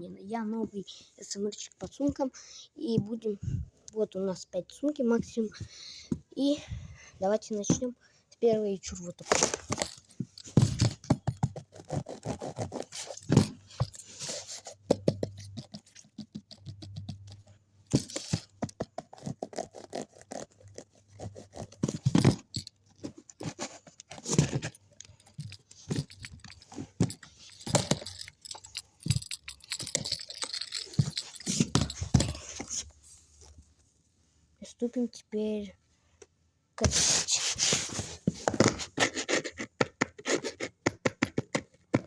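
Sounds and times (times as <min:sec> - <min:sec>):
scratching and scraping handbag: 0:09.1 - 0:33.6.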